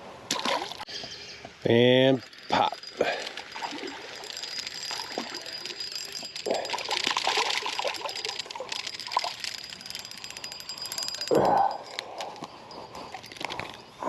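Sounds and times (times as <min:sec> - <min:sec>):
water splash: 0:00.3 - 0:00.8
water trickling and splashing: 0:02.8 - 0:10.0.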